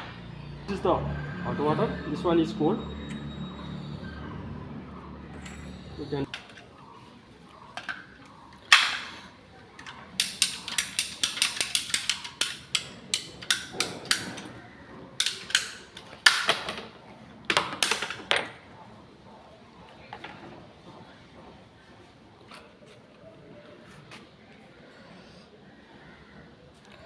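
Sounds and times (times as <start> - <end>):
plumbing tools knocking and clicking: 9.8 - 14.6, 15.2 - 16.9.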